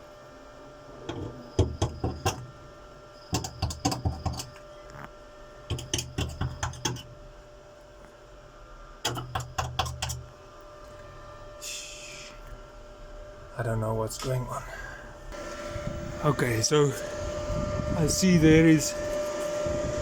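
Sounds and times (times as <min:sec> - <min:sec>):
arc welder crackling: 0:00.0 - 0:08.4, 0:09.0 - 0:10.7, 0:15.3 - 0:20.0
low electric buzz: 0:00.0 - 0:20.0.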